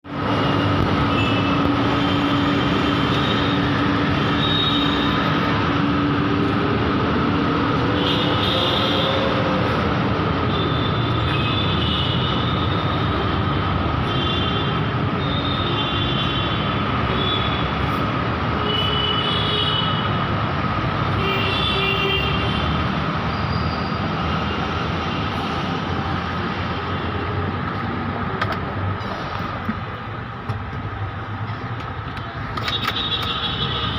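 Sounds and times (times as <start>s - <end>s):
moving vehicle running noise: 0.0s - 14.1s.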